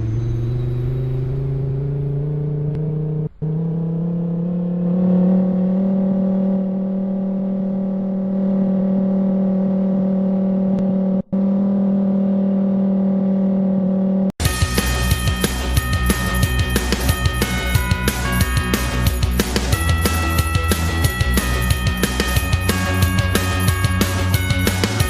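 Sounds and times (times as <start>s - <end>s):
warning siren rising tone: 0.0s - 19.0s
music: 14.4s - 25.0s.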